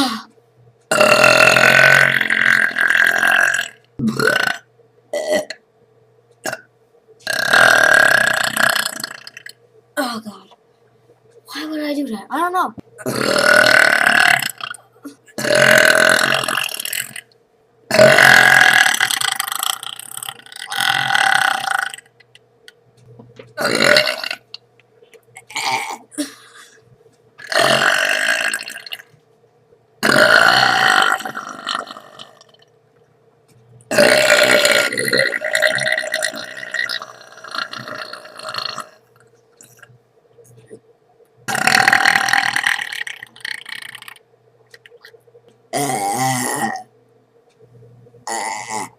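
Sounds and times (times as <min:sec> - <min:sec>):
boy burping loudly: 0:00.9 - 0:05.6, 0:06.4 - 0:10.2, 0:13.0 - 0:17.2, 0:17.9 - 0:22.1, 0:23.6 - 0:24.6, 0:25.4 - 0:26.8, 0:27.4 - 0:29.0, 0:30.0 - 0:32.6, 0:33.9 - 0:39.0, 0:41.5 - 0:44.2, 0:45.7 - 0:46.9, 0:48.3 - 0:48.9.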